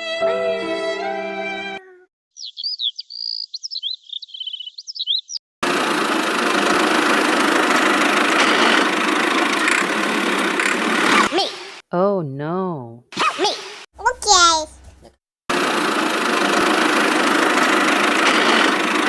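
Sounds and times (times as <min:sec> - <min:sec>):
high-pitched chirps and whistles: 0:02.4 - 0:05.4
loud steady engine: 0:05.6 - 0:11.3, 0:15.5 - 0:19.0.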